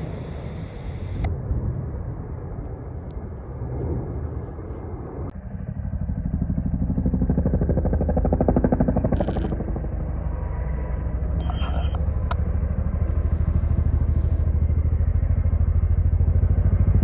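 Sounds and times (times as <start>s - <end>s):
engine rumble: 0.0s - 17.0s
rapidly pulsing engine beat: 7.0s - 17.0s.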